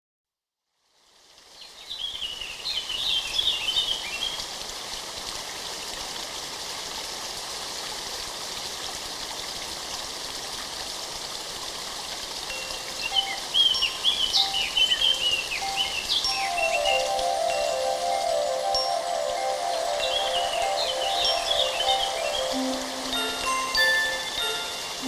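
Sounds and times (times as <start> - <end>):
flowing water: 1.1 - 25.0
high chirps: 12.5 - 25.0.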